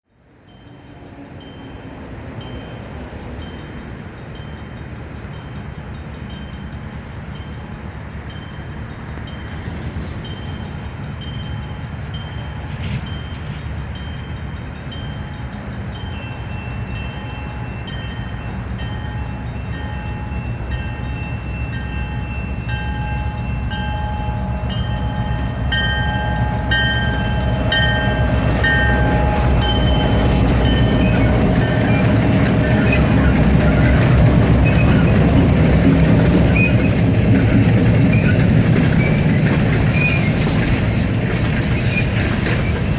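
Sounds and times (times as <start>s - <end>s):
diesel locomotives approaching: 0.0s - 42.9s
locomotive bell ringing: 0.4s - 41.5s.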